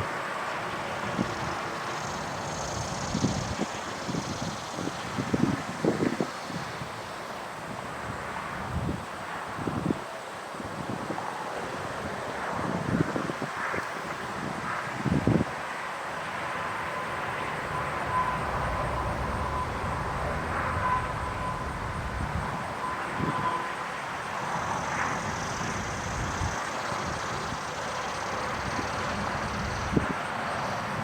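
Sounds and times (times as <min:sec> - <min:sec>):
outdoor rumble and hiss: 0:00.0 - 0:31.0
warning siren winding down: 0:16.6 - 0:25.3.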